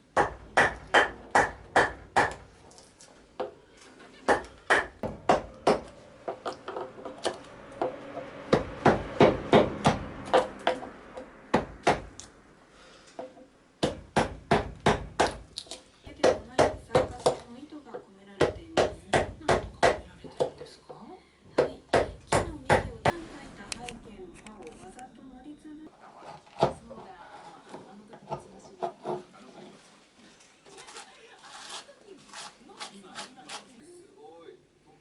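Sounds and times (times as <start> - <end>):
hand tool knocking on wood: 0.2 - 2.4, 4.3 - 12.1, 13.2 - 15.4, 16.2 - 20.7.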